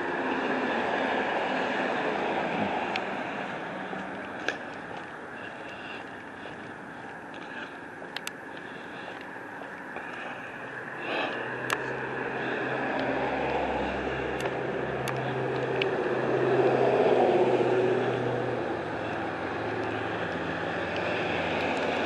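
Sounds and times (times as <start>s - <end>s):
vehicle passing: 0.0s - 22.0s
faint clicks: 8.1s - 8.4s.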